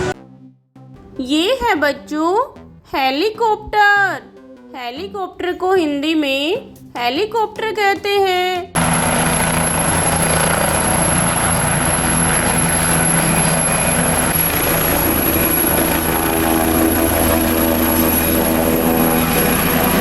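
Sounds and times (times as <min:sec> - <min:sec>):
helicopter rotor and engine: 0:08.8 - 0:20.0
thin high whine: 0:08.8 - 0:20.0.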